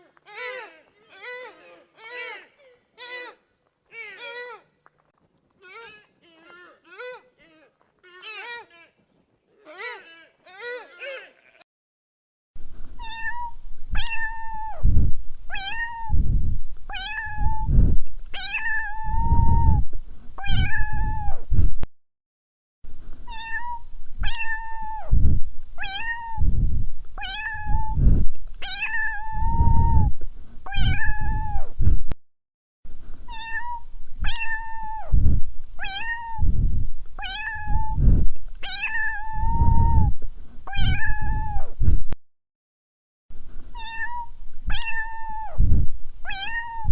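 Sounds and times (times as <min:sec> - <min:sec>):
cat meowing: 0:00.3 - 0:04.7, 0:05.6 - 0:07.2, 0:13.0 - 0:14.8, 0:15.5 - 0:16.2, 0:16.9 - 0:17.7, 0:18.4 - 0:19.8, 0:20.4 - 0:21.4, 0:23.3 - 0:25.1, 0:25.8 - 0:26.4, 0:27.2 - 0:28.0, 0:28.6 - 0:30.1, 0:30.7 - 0:31.7, 0:33.3 - 0:35.2, 0:35.8 - 0:36.4, 0:37.2 - 0:38.0, 0:38.6 - 0:40.1, 0:40.7 - 0:41.7, 0:43.8 - 0:45.6, 0:46.3 - 0:46.9.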